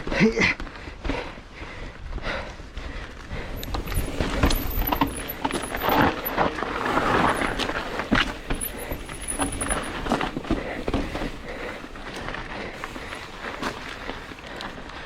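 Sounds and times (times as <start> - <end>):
wind rumbling on microphone: 1.5 - 12.0
bike knocks and rattles: 3.4 - 14.7
tyres rolling over rock and gravel: 3.5 - 15.0.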